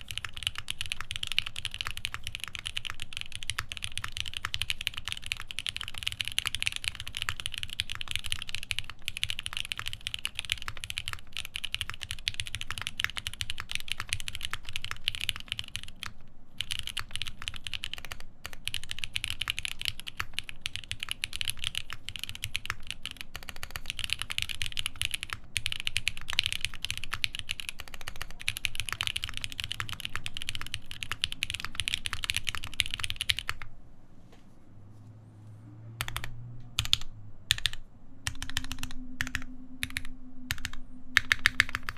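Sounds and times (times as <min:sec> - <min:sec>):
fast typing on mechanical keyboard: 0:00.0 - 0:33.7, 0:36.0 - 0:41.9.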